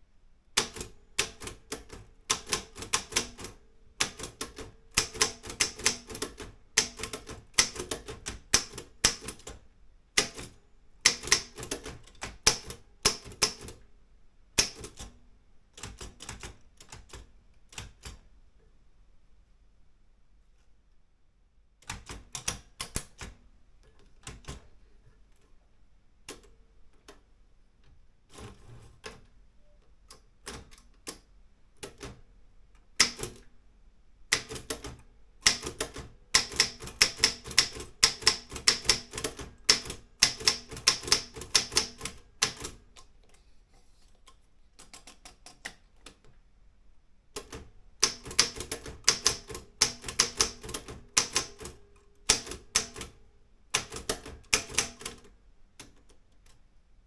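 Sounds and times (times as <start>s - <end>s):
manual typewriter typing: 0.6s - 9.6s, 10.2s - 13.8s, 14.6s - 15.1s, 33.0s - 33.5s, 34.3s - 43.0s, 47.4s - 56.5s.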